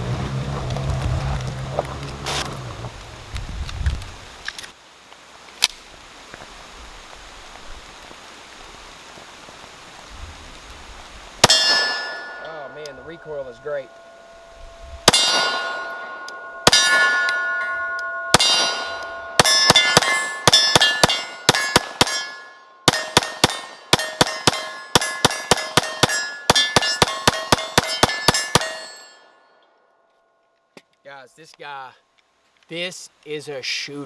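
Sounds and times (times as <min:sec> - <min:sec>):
pistol shots: 0:11.4 - 0:12.4, 0:15.1 - 0:16.0, 0:16.6 - 0:17.4, 0:18.4 - 0:29.0
steel plate clanging: 0:11.4 - 0:29.4.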